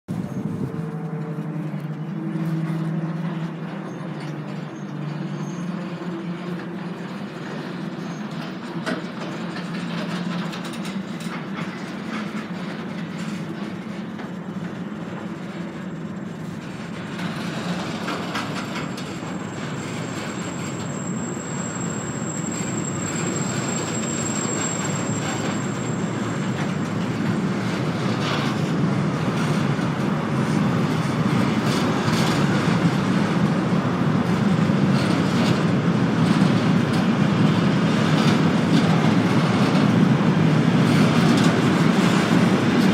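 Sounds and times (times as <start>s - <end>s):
freight train rumbling: 0.1s - 42.9s
wheels clacking over rail joints: 0.1s - 42.9s
thin high whine: 18.8s - 26.9s.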